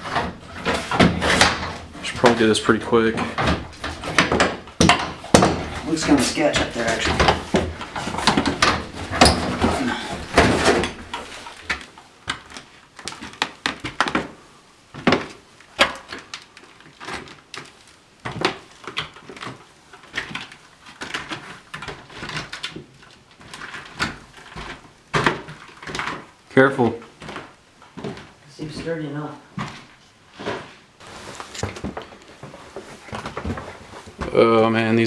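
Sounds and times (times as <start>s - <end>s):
footsteps on wooden stairs: 0.0s - 11.5s.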